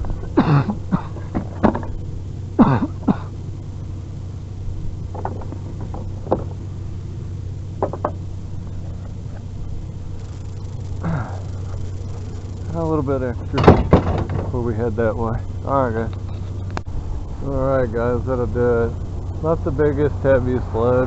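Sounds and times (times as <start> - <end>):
vehicle engine idling: 0.0 - 21.0
short knocks and clunks: 7.8 - 8.2, 13.5 - 14.6.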